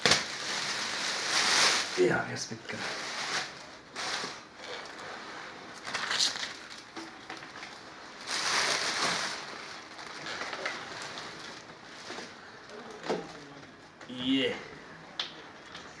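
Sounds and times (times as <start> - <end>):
packaging rustling and crinkling: 0.0 - 13.6.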